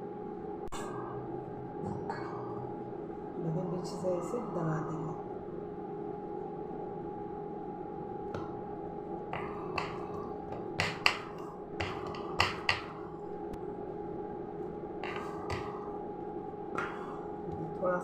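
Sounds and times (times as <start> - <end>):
electrical hum: 0.0 - 18.0
dough taps and clicks on counter: 9.4 - 13.0, 15.0 - 15.8.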